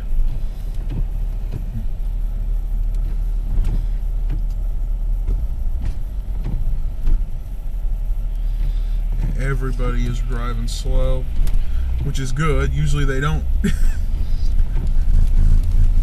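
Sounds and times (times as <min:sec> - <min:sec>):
road and engine rumble: 0:00.0 - 0:16.0.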